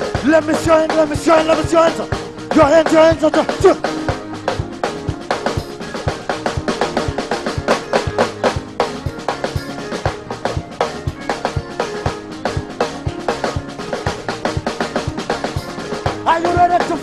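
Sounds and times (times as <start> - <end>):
live band playing fast beat: 0.0 - 17.0
sustained keyboard or bass notes: 0.0 - 17.0.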